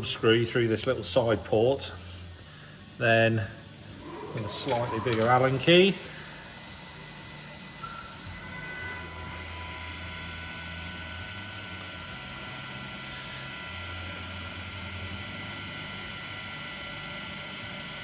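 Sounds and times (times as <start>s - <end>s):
machinery hum: 1.5s - 17.2s
low drone: 3.8s - 6.5s
thin high whine: 3.8s - 16.4s.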